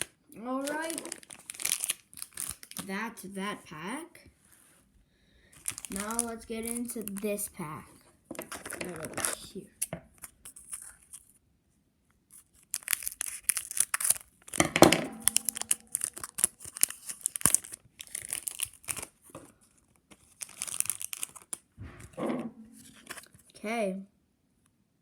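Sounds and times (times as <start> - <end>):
wrapper tearing and crinkling: 0.0 - 2.9, 5.6 - 7.3, 8.4 - 11.3, 12.4 - 14.6, 15.2 - 21.7, 22.8 - 23.5.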